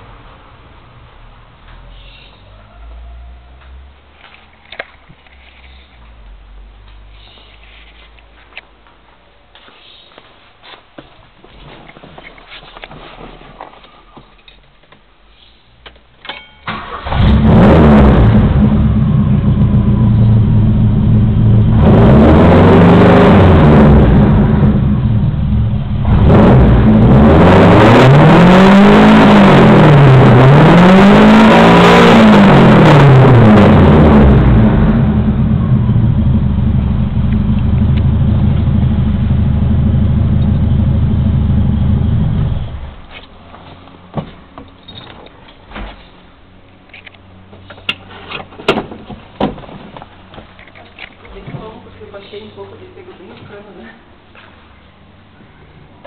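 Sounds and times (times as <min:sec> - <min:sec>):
car engine starting and revving: 0:16.7 - 0:43.0.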